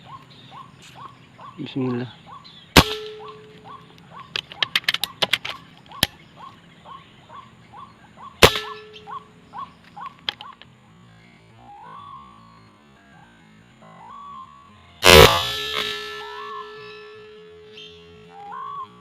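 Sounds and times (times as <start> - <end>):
bird calling: 0.0 - 10.7, 11.6 - 12.9, 13.8 - 19.0
air rifle shots: 2.8 - 3.4, 8.4 - 9.0, 15.0 - 16.3
quick clicks: 4.3 - 6.2.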